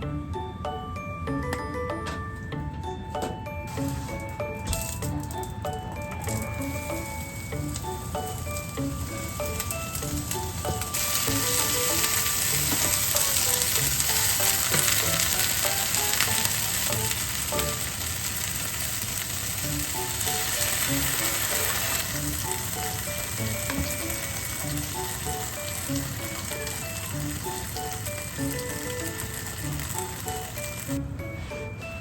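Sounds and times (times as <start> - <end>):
light background music: 0.0 - 32.0
food sizzling in a pan: 6.2 - 31.0.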